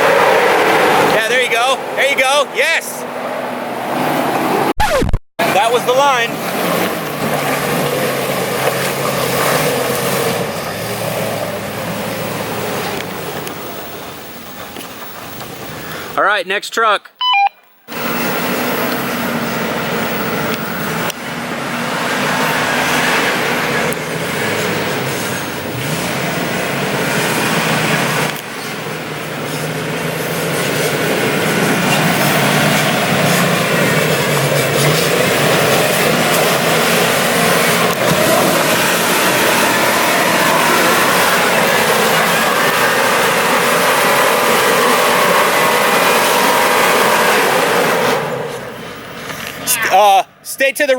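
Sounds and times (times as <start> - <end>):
truck engine running: 5.4 - 16.2, 17.9 - 49.6
steady rushing noise: 30.4 - 48.5.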